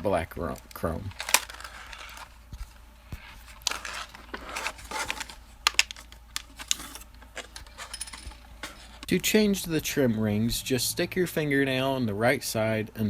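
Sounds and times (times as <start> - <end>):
plastic parts clicking and tapping: 0.4 - 2.7, 3.4 - 9.1
packaging rustling: 0.4 - 9.1.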